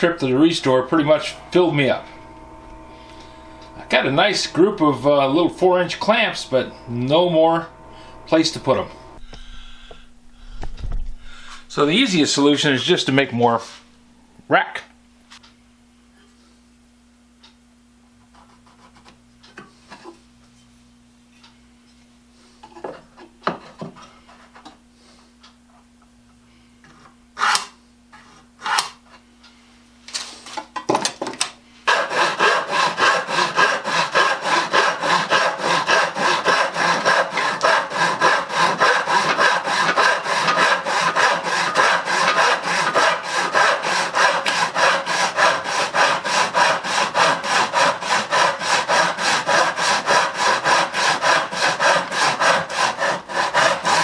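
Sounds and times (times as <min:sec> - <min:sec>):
hand saw cutting wood: 0:00.0 - 0:02.3, 0:03.0 - 0:09.0, 0:27.4 - 0:27.8, 0:28.6 - 0:29.0, 0:31.8 - 0:54.0.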